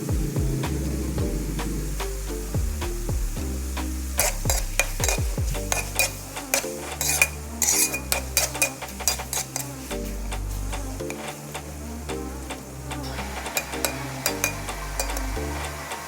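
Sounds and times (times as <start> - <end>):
metal utensil scraping cooking pan: 3.6 - 16.0.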